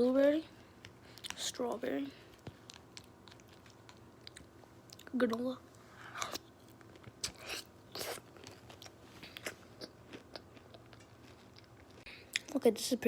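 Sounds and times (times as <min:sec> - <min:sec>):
person chewing crunchy food: 0:02.3 - 0:05.1, 0:05.8 - 0:12.6.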